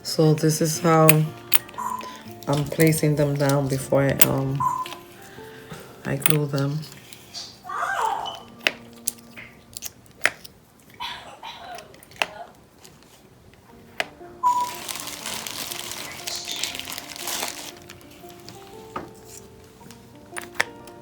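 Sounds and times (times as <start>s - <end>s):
crinkling: 1.0s - 21.0s.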